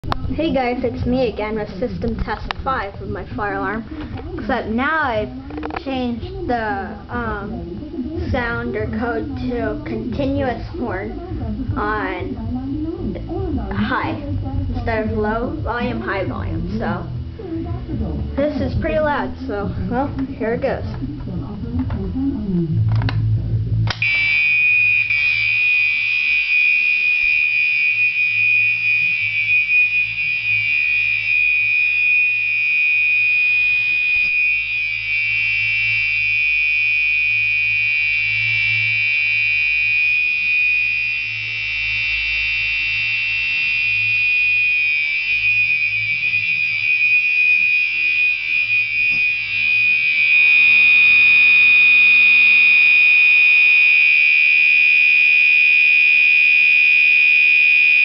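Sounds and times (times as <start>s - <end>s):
fire alarm horn: 23.9s - 58.0s.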